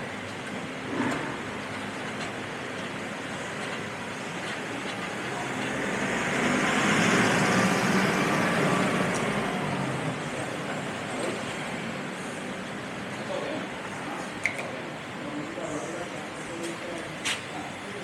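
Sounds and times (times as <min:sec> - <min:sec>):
passing road vehicle rushing: 0:05.8 - 0:10.4.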